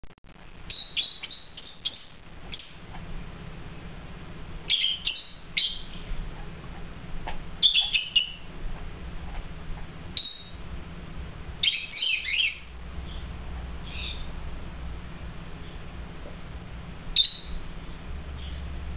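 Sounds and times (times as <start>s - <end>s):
lovebirds chirping: 0.6s - 3.1s, 4.6s - 7.0s, 7.6s - 10.7s, 11.5s - 14.4s, 17.1s - 18.8s.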